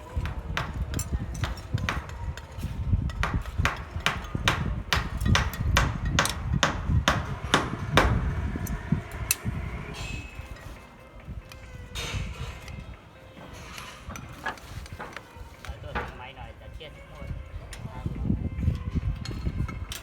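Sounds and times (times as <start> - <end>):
hammer blows: 3.1 - 10.5.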